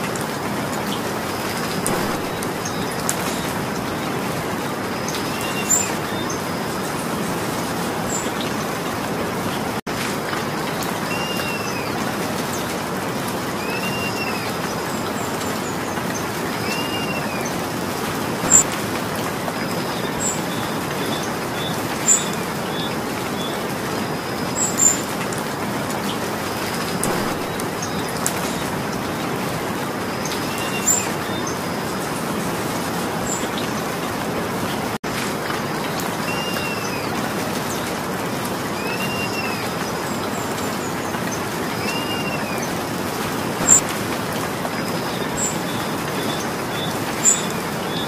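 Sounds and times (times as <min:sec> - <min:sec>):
steady rain: 0:00.0 - 0:48.0
bird calls: 0:00.9 - 0:04.2, 0:04.8 - 0:07.1, 0:11.1 - 0:12.0, 0:13.6 - 0:17.8, 0:18.4 - 0:18.8, 0:26.0 - 0:29.4, 0:30.1 - 0:31.9, 0:36.2 - 0:37.8, 0:38.7 - 0:42.8, 0:43.6 - 0:43.9.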